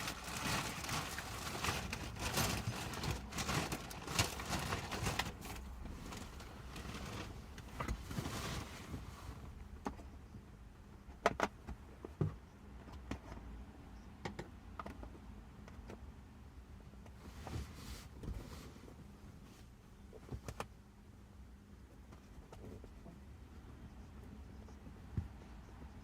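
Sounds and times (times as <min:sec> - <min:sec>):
fabric and foam rustling: 0:00.0 - 0:09.5.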